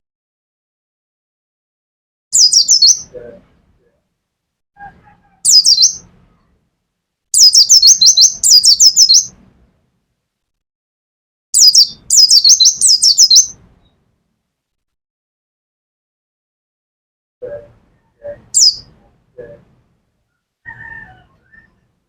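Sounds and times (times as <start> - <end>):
bird singing rapid high notes: 2.4 - 3.1, 4.8 - 6.1, 7.4 - 9.4, 11.6 - 13.9, 17.5 - 18.9.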